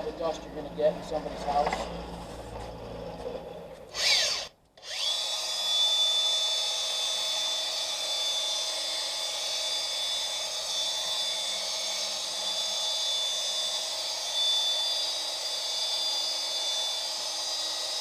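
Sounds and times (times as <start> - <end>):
stone polisher motor whine: 1.1 - 18.0.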